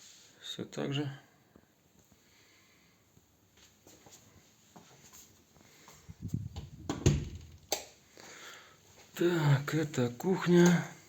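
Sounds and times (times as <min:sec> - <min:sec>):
knocks and low thumps: 0:06.1 - 0:07.6.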